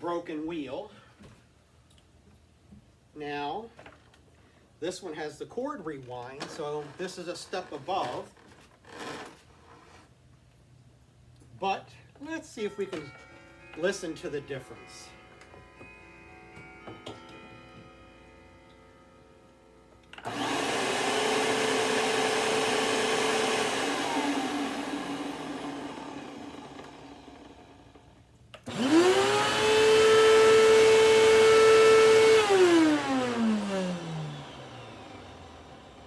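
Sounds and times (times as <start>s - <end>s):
vacuum motor whine: 20.0s - 36.0s
upright vacuum cleaner running: 20.1s - 36.0s.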